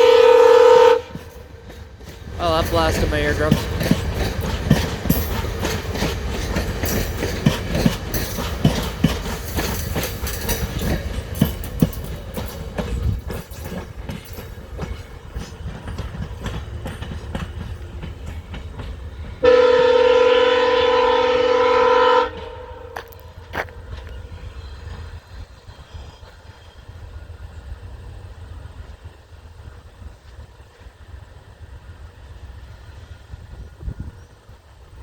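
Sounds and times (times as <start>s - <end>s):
train horn blast: 0.0s - 1.3s, 19.4s - 23.2s
train wheels clacking over rails: 0.0s - 20.4s, 22.0s - 35.0s.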